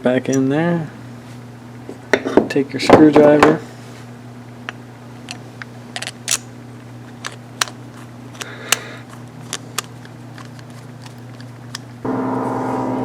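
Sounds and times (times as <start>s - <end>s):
low hum: 3.7s - 13.0s
small metal parts clicking: 6.0s - 6.5s, 7.1s - 11.9s.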